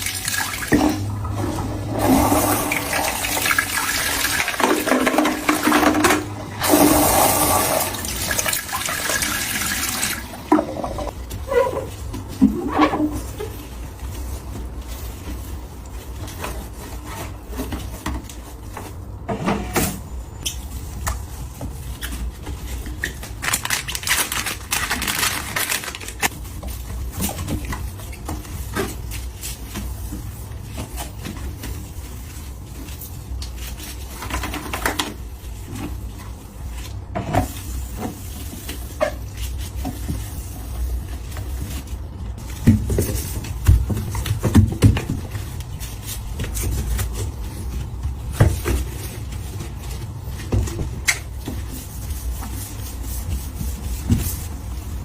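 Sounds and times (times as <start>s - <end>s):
rustling: 11.0s - 19.3s, 20.6s - 55.0s.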